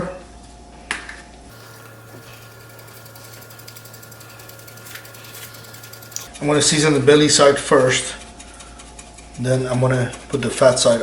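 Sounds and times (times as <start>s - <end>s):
pepper grinder grinding: 1.5s - 6.3s
steady low hum: 1.5s - 6.3s.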